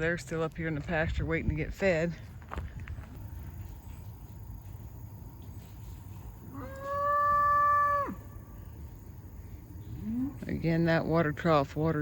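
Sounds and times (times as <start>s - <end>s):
cattle bawling: 6.5s - 8.2s.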